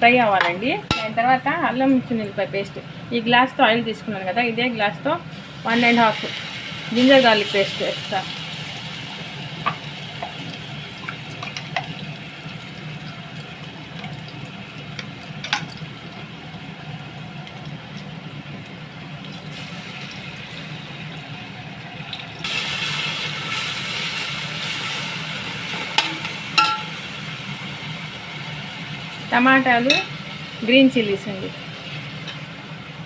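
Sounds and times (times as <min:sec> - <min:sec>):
onions sizzling in hot oil: 0:00.0 - 0:33.0
utensil tapping pot: 0:26.0 - 0:26.9, 0:29.8 - 0:30.1.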